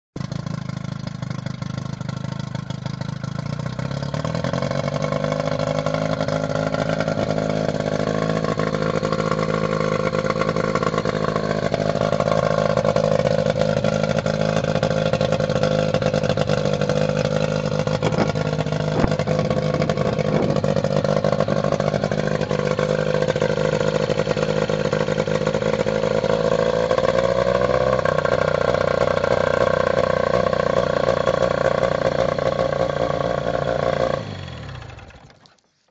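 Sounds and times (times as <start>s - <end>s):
outboard motor running: 0.2s - 35.9s.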